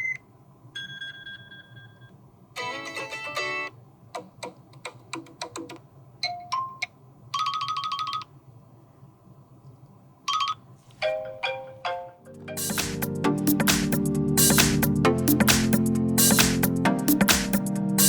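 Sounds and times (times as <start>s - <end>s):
electronic ringtone melodies: 6.2s - 8.3s, 10.3s - 13.7s.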